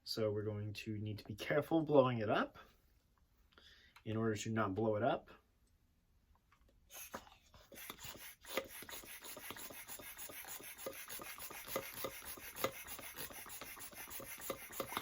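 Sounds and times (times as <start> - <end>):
balloon pump rasping: 6.9 - 15.0.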